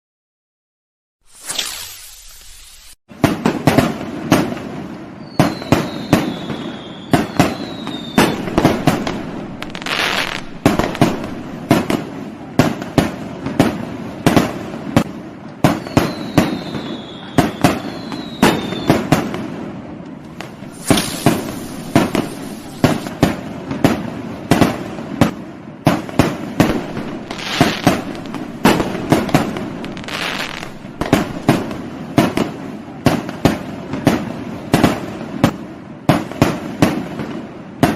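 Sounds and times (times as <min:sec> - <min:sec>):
falling firework whistles: 0:01.2 - 0:03.0, 0:05.1 - 0:12.0, 0:15.6 - 0:19.4, 0:20.3 - 0:23.4, 0:26.6 - 0:32.4
fireworks bangs and crackling: 0:02.5 - 0:37.9.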